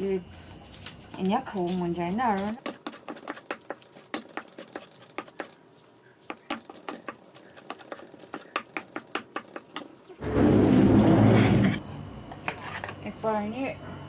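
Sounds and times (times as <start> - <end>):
utensil tapping food: 1.7 - 5.6, 6.2 - 10.1.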